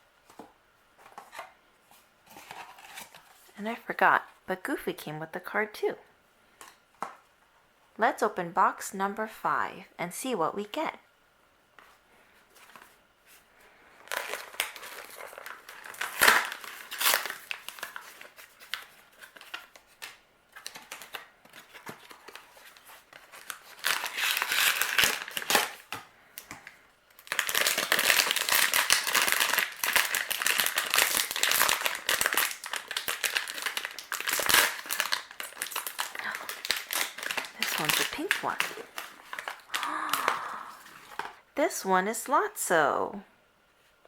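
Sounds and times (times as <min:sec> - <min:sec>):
plastic bag crinkling: 0:14.0 - 0:26.0, 0:27.2 - 0:41.4.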